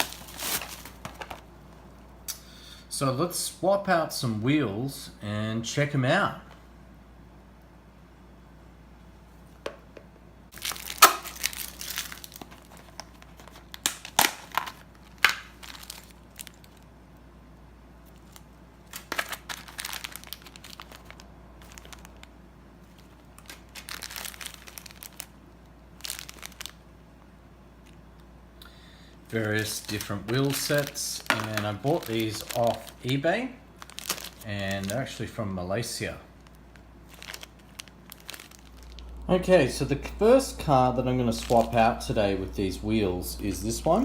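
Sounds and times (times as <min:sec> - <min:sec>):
plastic packaging crinkling: 0:00.0 - 0:02.0, 0:10.5 - 0:16.9, 0:18.0 - 0:26.8, 0:29.3 - 0:39.3, 0:41.2 - 0:42.6.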